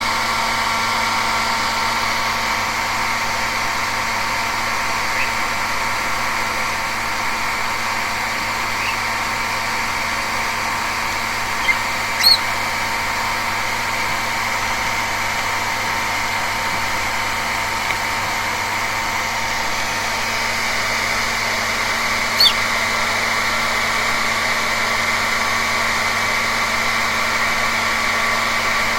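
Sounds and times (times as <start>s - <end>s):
bird chirping: 5.1s - 5.6s, 8.2s - 12.8s, 22.3s - 22.6s.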